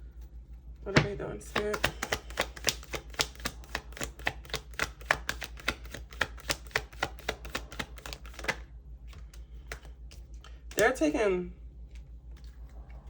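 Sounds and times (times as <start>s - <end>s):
cards being shuffled: 1.4s - 10.9s.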